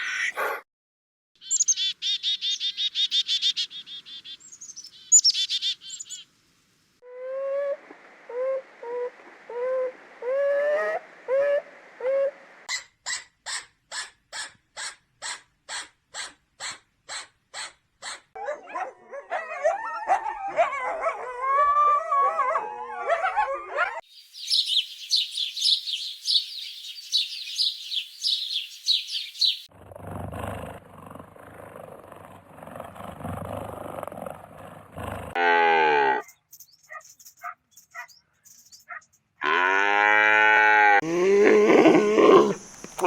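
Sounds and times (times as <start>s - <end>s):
rapid high-pitched animal calls: 24.2s - 29.7s
repeated animal call: 24.4s - 29.7s.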